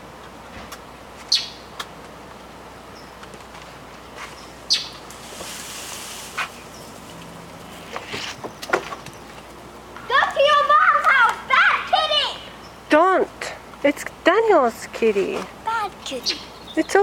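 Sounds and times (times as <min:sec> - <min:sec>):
small songbird chirping: 0:01.3 - 0:01.7, 0:02.9 - 0:03.2, 0:04.3 - 0:05.1, 0:12.5 - 0:12.9, 0:15.8 - 0:17.0.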